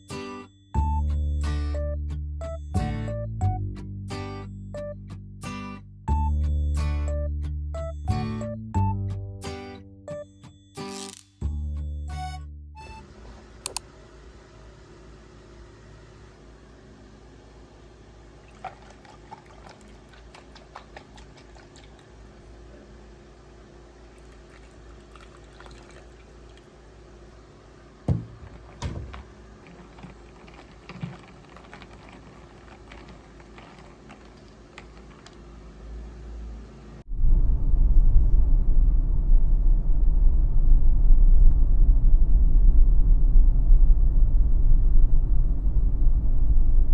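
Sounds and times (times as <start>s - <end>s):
steady low hum: 12.8s - 46.9s
liquid being poured: 18.3s - 22.4s, 24.0s - 26.8s, 28.3s - 35.5s
louder knocks: 28.1s - 29.4s.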